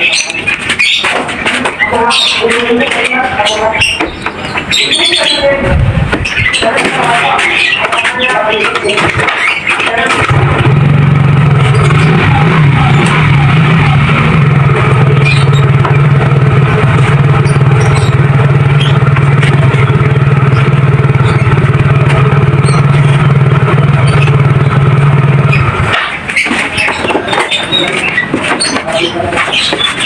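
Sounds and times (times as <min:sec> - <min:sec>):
motorcycle engine idling: 0:10.0 - 0:30.0.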